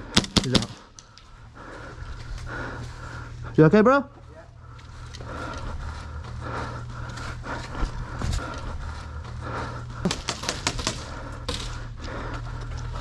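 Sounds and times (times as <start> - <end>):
low hum: 0.0 - 13.0
airsoft gun shots: 0.1 - 0.9, 10.0 - 11.1.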